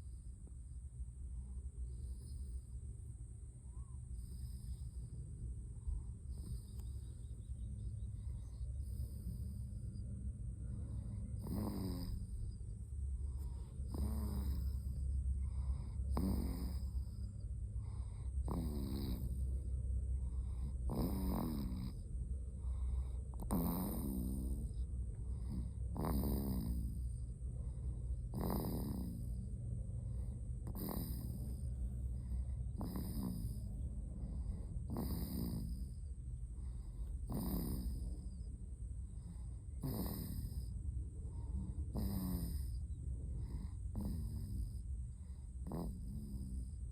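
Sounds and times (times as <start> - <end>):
low hum: 0.0 - 20.9, 21.7 - 26.0, 26.8 - 28.4, 29.1 - 35.0, 35.6 - 46.9
person snoring loudly: 10.9 - 12.4, 13.4 - 17.2, 17.8 - 19.4, 20.3 - 22.0, 22.6 - 27.2, 28.3 - 29.5, 30.6 - 36.1, 37.2 - 38.4, 39.8 - 40.7, 41.3 - 42.8, 43.4 - 44.8, 45.6 - 46.8.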